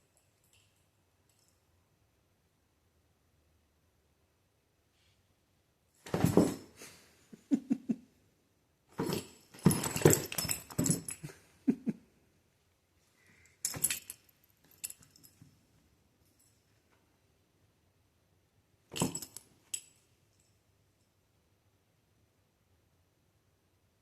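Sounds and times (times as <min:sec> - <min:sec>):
cats scuffling with sharp knocks: 0:06.0 - 0:07.0, 0:09.0 - 0:11.4.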